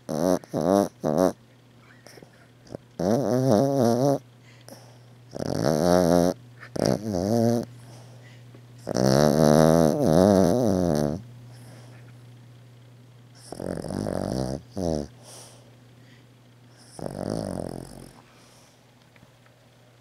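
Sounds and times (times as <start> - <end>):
dog snoring: 0.0 - 1.4, 2.0 - 8.1, 8.8 - 11.9, 13.4 - 15.6, 16.7 - 18.7
dog snorting: 0.0 - 1.4, 2.7 - 8.1, 8.8 - 12.0, 13.4 - 15.6, 16.8 - 18.5.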